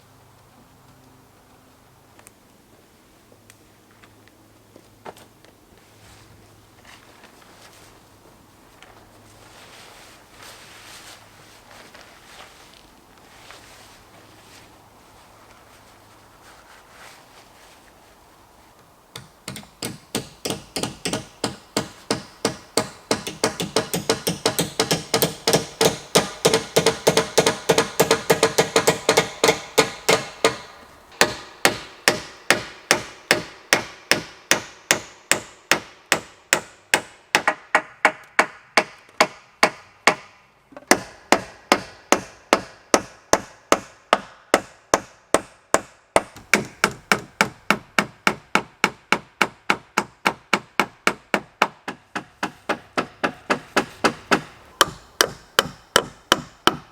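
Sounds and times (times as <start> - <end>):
hammer striking wood: 19.1 - 40.3, 40.9 - 56.9.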